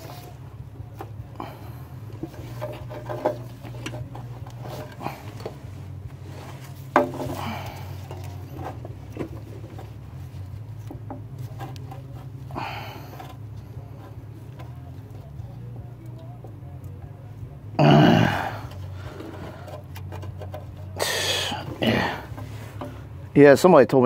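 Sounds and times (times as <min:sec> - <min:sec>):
steady low hum: 0:00.0 - 0:24.0
tools knocking and tapping: 0:02.1 - 0:05.6, 0:06.8 - 0:09.9.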